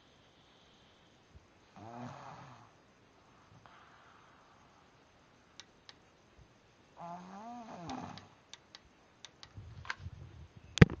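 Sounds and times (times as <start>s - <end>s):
man snoring: 1.8s - 2.8s, 7.0s - 8.3s.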